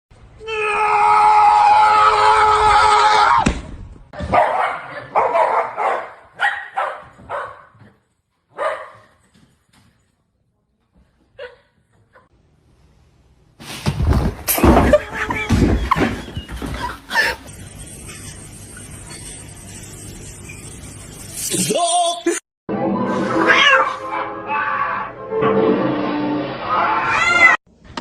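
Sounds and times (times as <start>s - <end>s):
dog barking: 4.2s - 7.8s, 8.5s - 9.1s.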